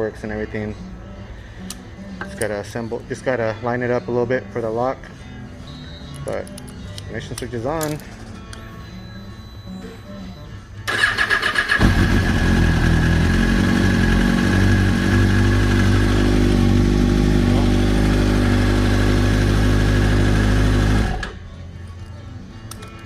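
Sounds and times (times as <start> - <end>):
starter motor cranking: 10.9 - 13.3
motorcycle engine idling: 10.9 - 21.0.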